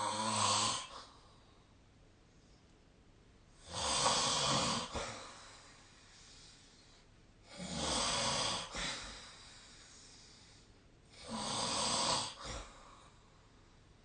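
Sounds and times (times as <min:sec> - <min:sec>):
person snoring: 0:00.0 - 0:01.2, 0:03.6 - 0:05.4, 0:07.5 - 0:09.4, 0:11.1 - 0:13.0.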